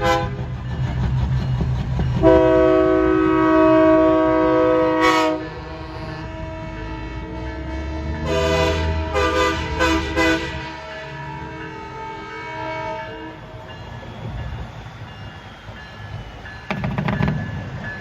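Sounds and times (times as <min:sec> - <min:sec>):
truck air horn blast: 0:02.2 - 0:05.5, 0:06.3 - 0:10.8.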